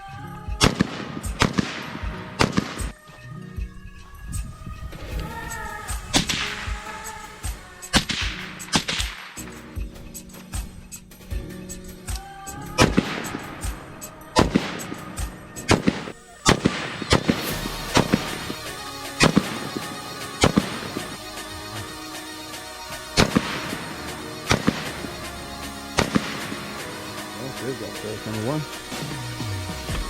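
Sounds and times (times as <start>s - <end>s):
rifle shots with echo: 0.6s - 2.9s.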